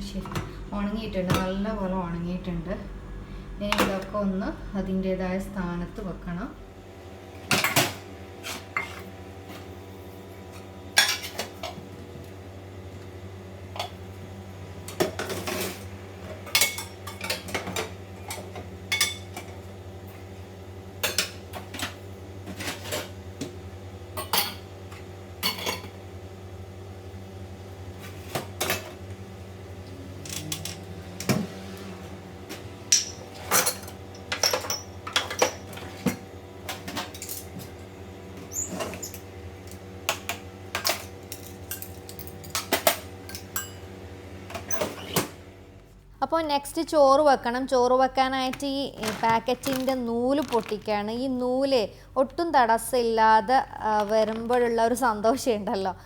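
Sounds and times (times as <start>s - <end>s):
steady low hum: 0.0s - 8.4s, 45.5s - 56.0s
dishes and cutlery clattering: 33.0s - 35.9s.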